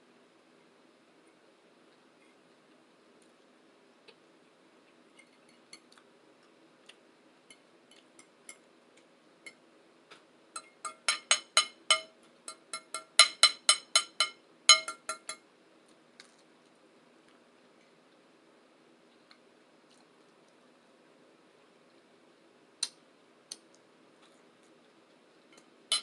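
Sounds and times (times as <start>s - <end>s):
metal utensil clinking on dish: 10.6s - 15.4s.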